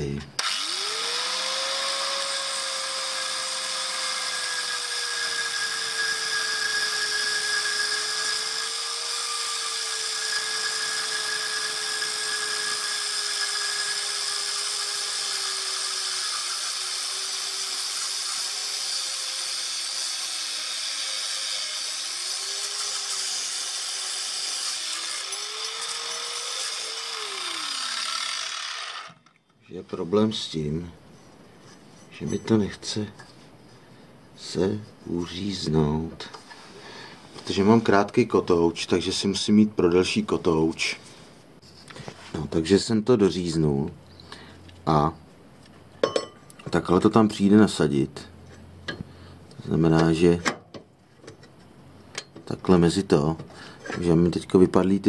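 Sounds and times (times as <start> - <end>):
power tool motor whine: 0.4 - 29.4.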